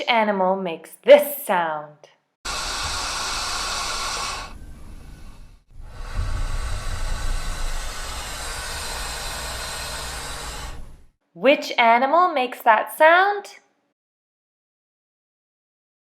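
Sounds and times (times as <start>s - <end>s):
snake hissing: 2.5s - 11.2s
low rumble: 4.4s - 11.1s.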